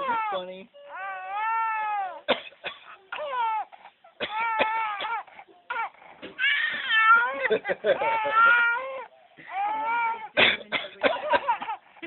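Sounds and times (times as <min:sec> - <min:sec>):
baby squealing: 0:05.7 - 0:09.0.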